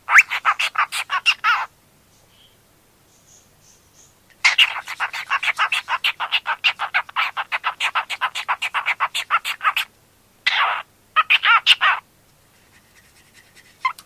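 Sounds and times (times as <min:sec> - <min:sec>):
cockatiel chirping: 0:00.1 - 0:01.7, 0:04.4 - 0:09.9, 0:10.5 - 0:12.0
bird harsh call: 0:04.4 - 0:09.9.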